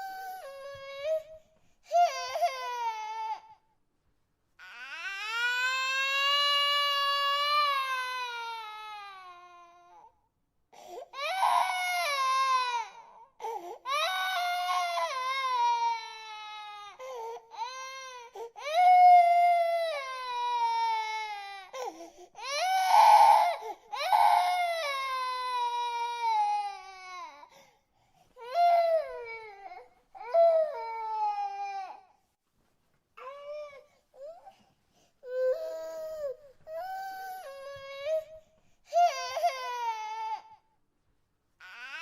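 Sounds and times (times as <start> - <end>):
baby crying: 0.0 - 3.6, 11.1 - 27.5.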